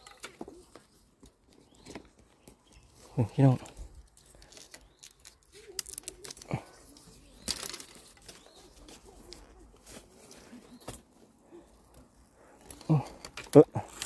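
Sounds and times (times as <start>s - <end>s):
leaves rustling and crackling: 2.6s - 14.0s
stem snapping: 4.8s - 6.6s.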